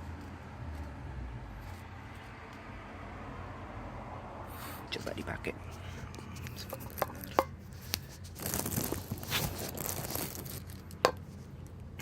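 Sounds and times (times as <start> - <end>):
watch rustling and crinkling: 5.8 - 12.0.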